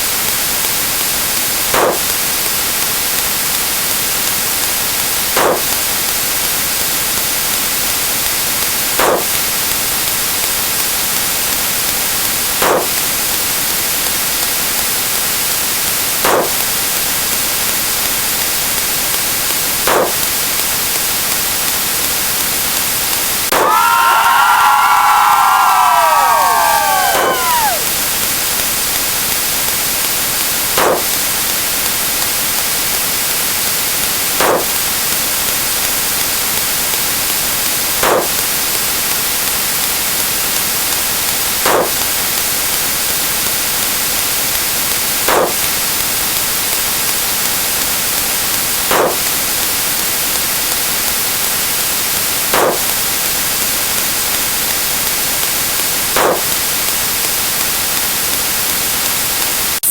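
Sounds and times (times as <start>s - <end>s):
static hiss: 0.0s - 59.9s
short blips: 1.8s - 2.2s, 5.4s - 5.8s, 9.0s - 9.4s, 12.6s - 13.1s, 16.2s - 16.7s, 19.9s - 20.3s, 23.5s - 28.1s, 30.8s - 31.4s, 34.4s - 34.9s, 38.0s - 38.5s, 41.7s - 42.1s, 45.3s - 45.8s, 48.9s - 49.4s, 52.6s - 53.0s, 56.2s - 56.6s.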